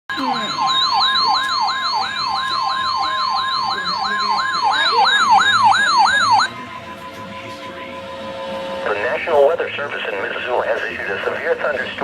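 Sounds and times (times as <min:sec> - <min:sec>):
electronic alert tone with siren sweep: 0:00.1 - 0:06.6.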